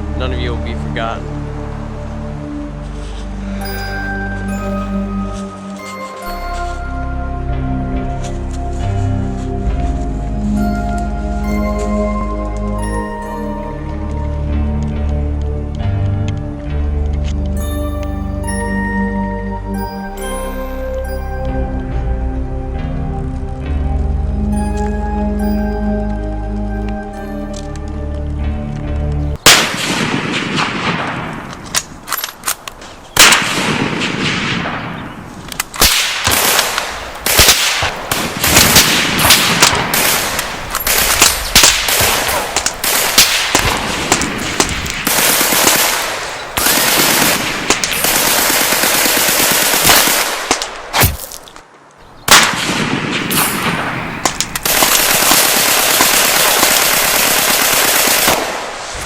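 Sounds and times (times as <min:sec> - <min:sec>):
single gunshots: 0:52.3 - 0:55.0.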